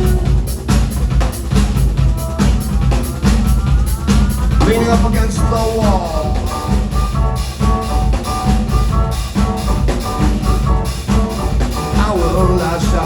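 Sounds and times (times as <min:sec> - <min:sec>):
person singing: 0:00.0 - 0:00.9, 0:02.0 - 0:07.0, 0:11.7 - 0:13.0
bass guitar: 0:00.0 - 0:13.0
drum kit: 0:00.0 - 0:13.0
repeating pitched riff: 0:00.0 - 0:13.0.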